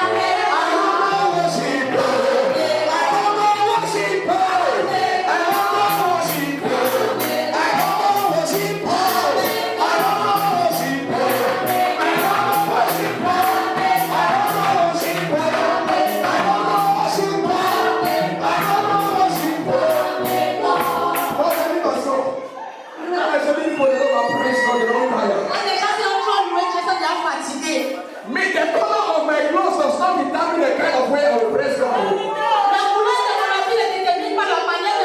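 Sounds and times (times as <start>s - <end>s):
gospel choir singing with band: 0.0s - 22.2s
steady percussion beat: 5.4s - 21.7s.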